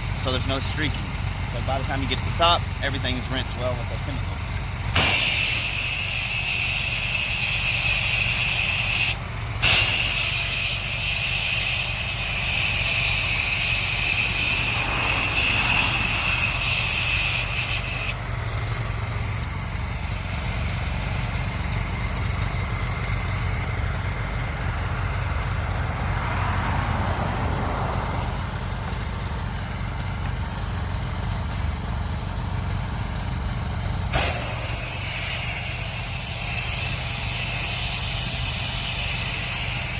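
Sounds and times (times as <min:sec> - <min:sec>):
pressure washer engine running: 0:00.0 - 0:39.9
spray wand hissing: 0:05.0 - 0:18.2, 0:34.1 - 0:39.9.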